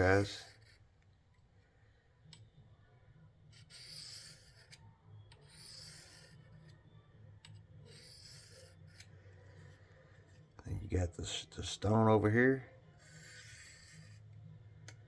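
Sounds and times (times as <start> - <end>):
knife scraping on ceramic rod: 3.5 - 6.8, 7.8 - 9.8, 13.0 - 14.4.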